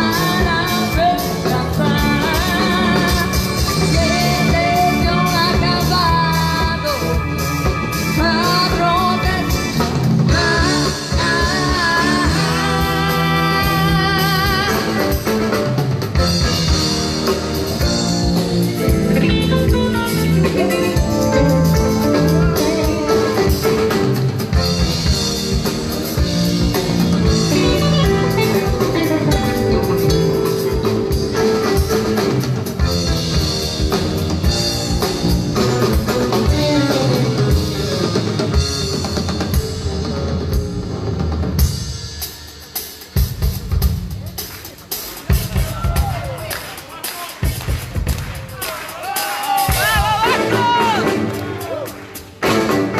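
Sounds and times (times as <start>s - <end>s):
person singing: 0.0s - 7.4s, 8.1s - 15.7s
drum kit: 0.0s - 52.9s.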